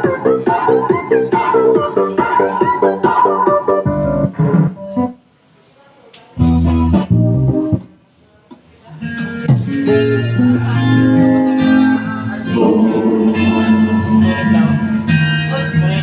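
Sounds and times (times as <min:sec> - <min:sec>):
deep bass notes: 0:06.4 - 0:07.8, 0:12.4 - 0:16.0
loud guitar and bass music: 0:06.4 - 0:07.8, 0:09.4 - 0:16.0.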